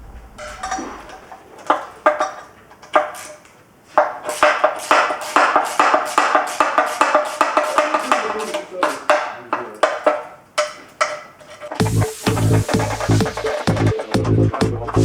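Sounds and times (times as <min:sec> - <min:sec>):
percussive music with quick beat: 0:11.8 - 0:15.0.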